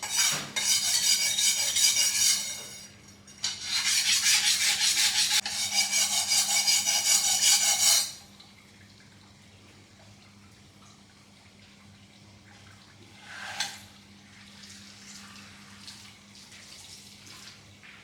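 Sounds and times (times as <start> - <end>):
water splashing and trickling: 8.1 - 18.0.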